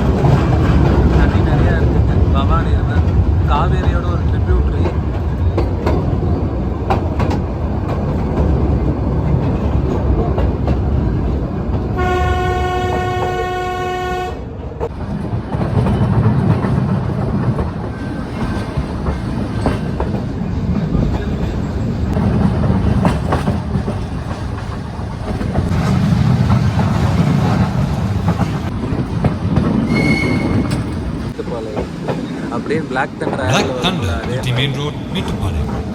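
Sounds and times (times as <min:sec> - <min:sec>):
train wheels clattering on rail: 0:00.0 - 0:13.4, 0:14.8 - 0:35.9
steam locomotive whistle: 0:12.0 - 0:14.4, 0:29.8 - 0:30.8.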